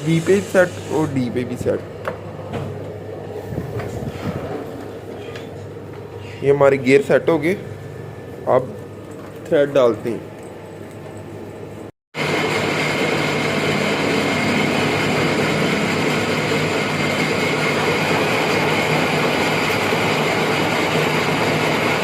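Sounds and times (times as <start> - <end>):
metal lathe running: 0.0 - 1.6, 12.2 - 22.0.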